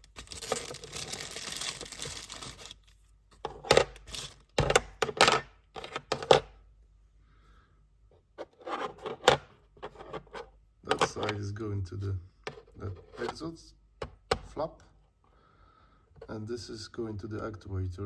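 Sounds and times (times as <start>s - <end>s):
plastic packaging crinkling: 0.0s - 3.1s.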